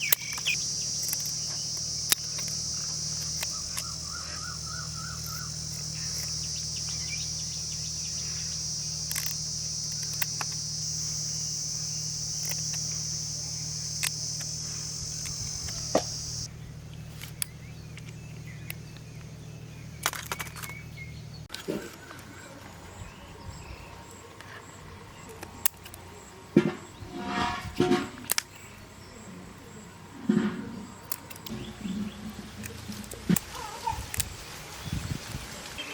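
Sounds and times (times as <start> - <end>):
low hum: 0.0 - 21.5
insects buzzing: 0.0 - 35.9.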